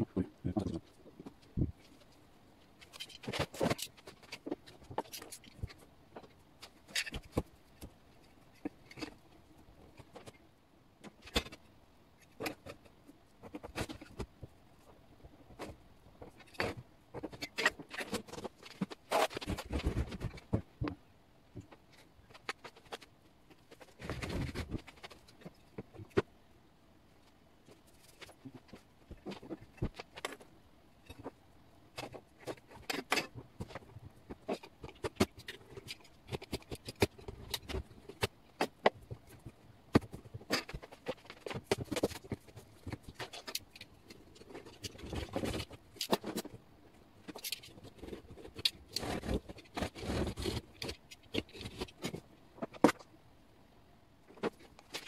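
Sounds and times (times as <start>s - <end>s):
clicks knocks and scrapes on wood: 32.0s - 46.6s, 47.2s - 53.1s.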